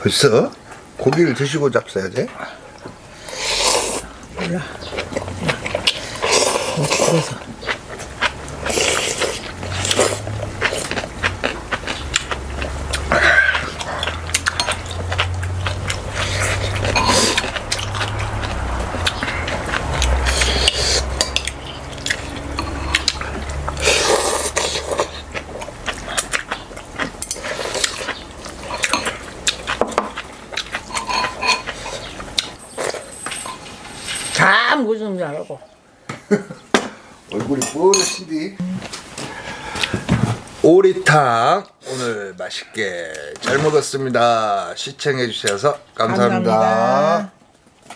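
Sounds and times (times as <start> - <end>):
utensils clinking against bowls: 13.5 - 23.8, 26.4 - 34.4, 37.6 - 38.3.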